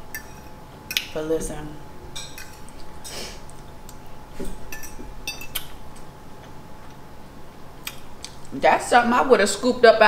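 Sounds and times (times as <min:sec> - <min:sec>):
faint steady hum: 0:00.0 - 0:10.0
cutlery clinking on dish: 0:02.2 - 0:02.7, 0:04.7 - 0:05.7.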